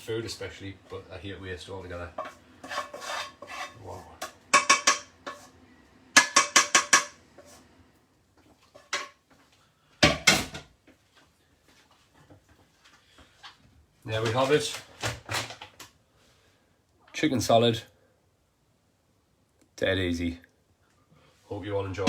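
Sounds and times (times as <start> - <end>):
metal utensils clinking on a pan: 2.2 - 5.4, 6.2 - 7.2.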